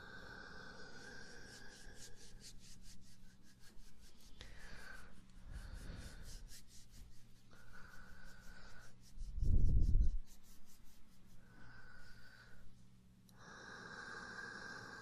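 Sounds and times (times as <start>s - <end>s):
quick rubbing strokes: 1.5s - 12.2s.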